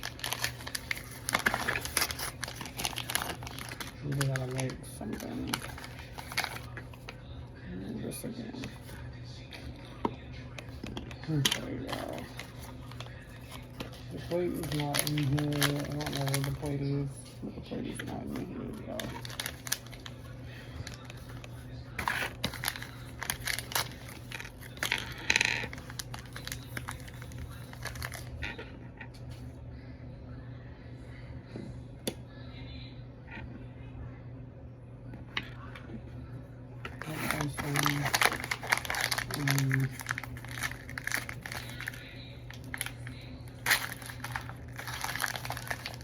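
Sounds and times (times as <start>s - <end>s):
plastic packaging crinkling: 0.0s - 7.2s, 10.7s - 16.9s, 18.0s - 28.6s, 36.9s - 46.0s.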